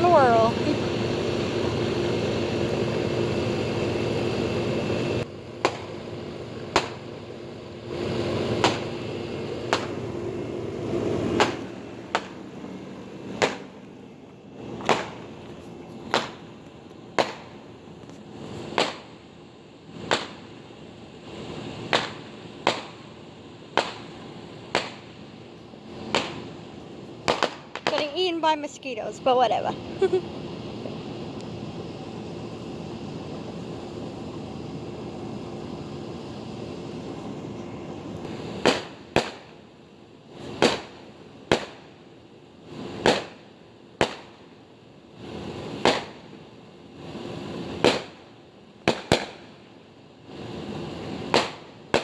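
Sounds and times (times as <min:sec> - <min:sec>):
steady hum: 0:00.0 - 0:52.0
fireworks bangs: 0:05.5 - 0:12.6, 0:13.2 - 0:17.7, 0:18.4 - 0:19.2, 0:20.0 - 0:20.5, 0:21.8 - 0:25.3, 0:25.9 - 0:28.8, 0:38.2 - 0:39.6, 0:40.4 - 0:42.0, 0:42.7 - 0:44.5, 0:45.3 - 0:46.4, 0:47.1 - 0:49.6, 0:50.3 - 0:52.0.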